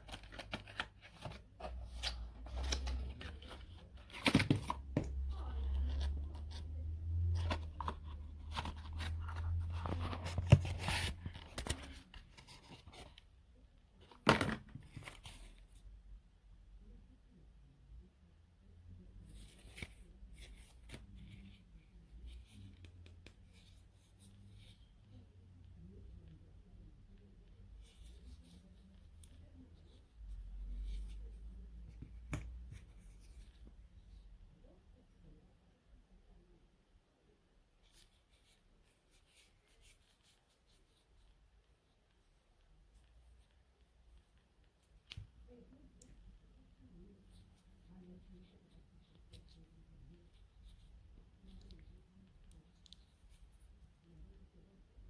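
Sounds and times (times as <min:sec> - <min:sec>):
rustling handling noises: 0:00.0 - 0:16.0, 0:19.1 - 0:34.8, 0:37.6 - 0:55.0.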